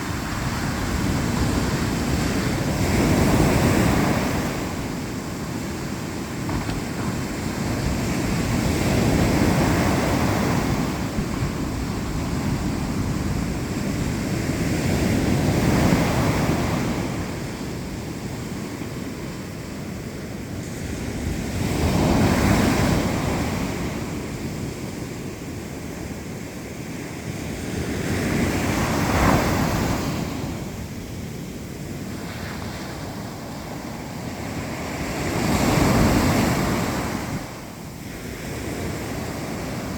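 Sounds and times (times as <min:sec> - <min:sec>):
waves breaking on shore: 0:00.0 - 0:39.9.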